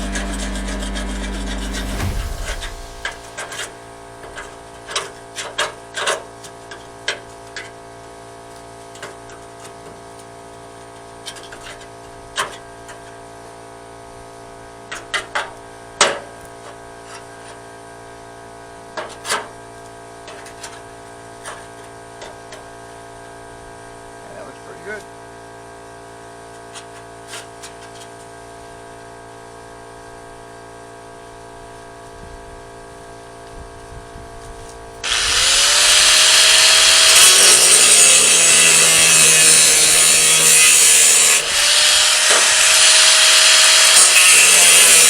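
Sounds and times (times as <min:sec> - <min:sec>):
steady electrical hum: 0:00.0 - 0:04.2.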